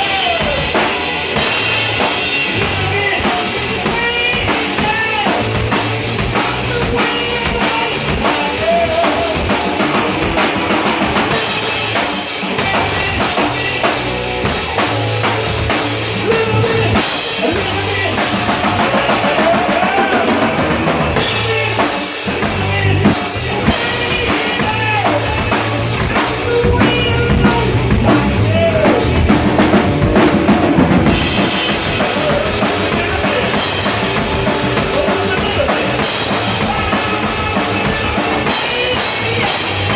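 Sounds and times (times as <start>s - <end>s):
drum kit beat: 0.0s - 39.9s
pitched instruments or voice: 12.5s - 39.9s.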